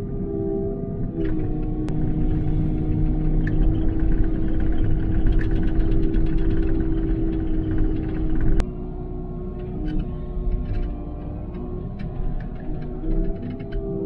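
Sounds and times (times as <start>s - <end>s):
excavator engine and hydraulics: 0.0s - 14.0s
rapid clattering: 2.0s - 8.6s.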